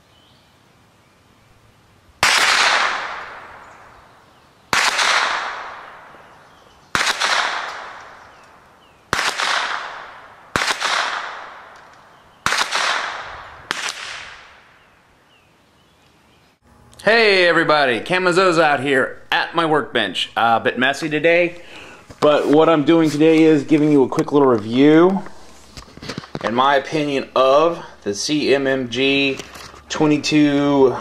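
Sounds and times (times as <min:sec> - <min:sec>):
rifle shots with echo: 0:02.2 - 0:03.9, 0:04.7 - 0:08.4, 0:09.1 - 0:14.8.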